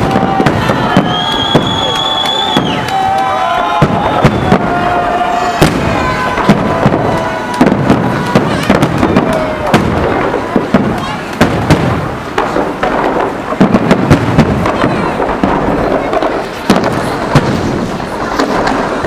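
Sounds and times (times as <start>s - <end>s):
voices: 0.0s - 18.5s
fireworks shells bursting: 0.0s - 19.0s
whistling fireworks: 0.0s - 19.0s.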